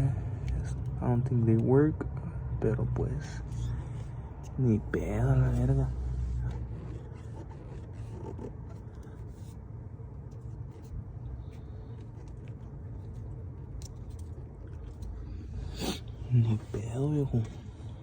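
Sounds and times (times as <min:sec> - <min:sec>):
scraping and rubbing: 0:05.0 - 0:09.6.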